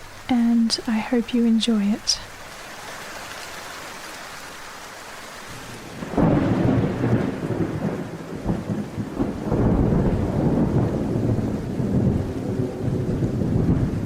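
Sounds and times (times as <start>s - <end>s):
rain hiss: 0.0s - 14.0s
thunder rumbling: 5.4s - 14.0s.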